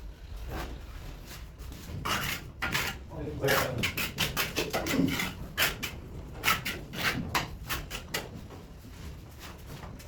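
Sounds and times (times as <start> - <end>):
hand tool scraping hard surface: 1.9 - 8.2.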